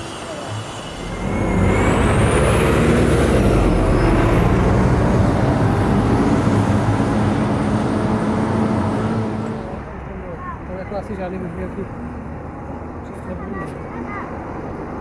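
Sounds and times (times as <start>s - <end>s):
faint high whine: 0.0s - 4.2s
loud steady vehicle noise: 0.0s - 15.0s.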